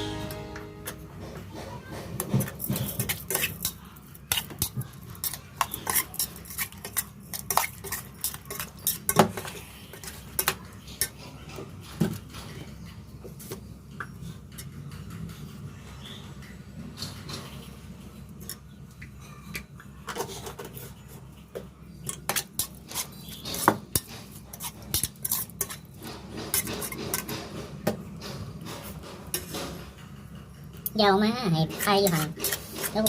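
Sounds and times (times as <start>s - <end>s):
low steady hum: 0.0s - 1.5s.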